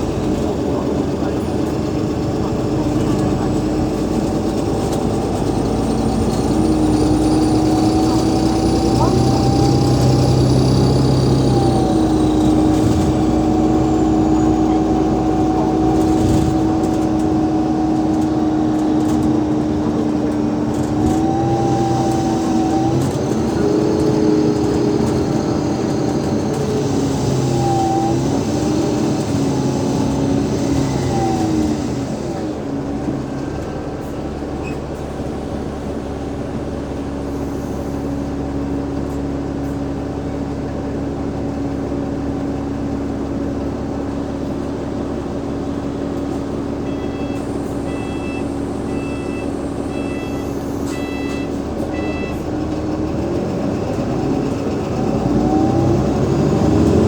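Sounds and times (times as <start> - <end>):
bus diesel engine: 0.0 - 57.0
short high beeps: 46.9 - 52.4.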